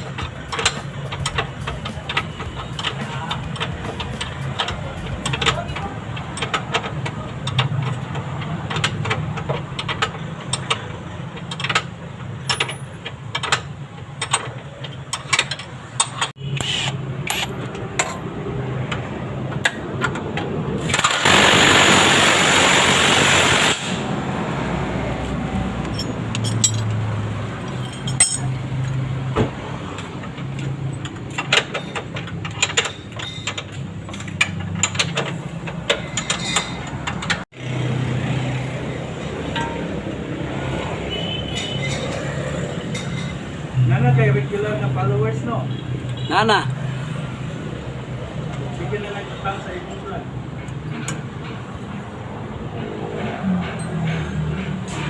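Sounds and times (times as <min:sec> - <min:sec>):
loud burst of noise: 0:00.0 - 0:06.1, 0:20.8 - 0:24.4
metal tools clinking: 0:25.8 - 0:27.0, 0:27.7 - 0:28.6, 0:35.9 - 0:36.9.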